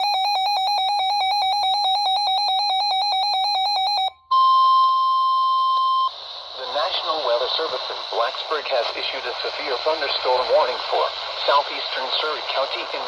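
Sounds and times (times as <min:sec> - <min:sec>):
alert alarm beeping rapidly: 0:00.0 - 0:06.0
radio static: 0:06.1 - 0:13.0.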